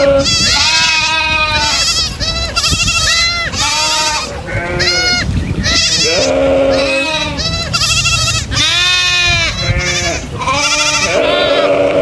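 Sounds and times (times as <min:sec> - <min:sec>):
goats bleating: 0:00.0 - 0:12.0.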